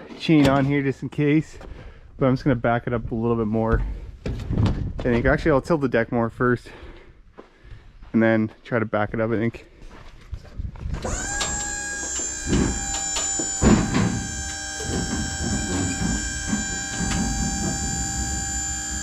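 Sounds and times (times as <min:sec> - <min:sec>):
hydraulic pump whine: 0:11.0 - 0:19.0
metal clunks: 0:11.0 - 0:19.0.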